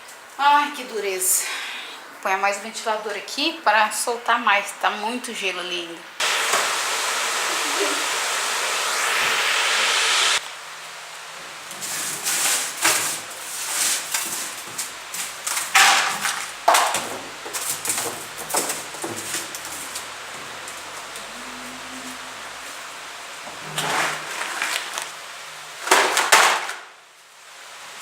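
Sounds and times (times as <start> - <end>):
steady rushing hiss: 6.2 - 26.1.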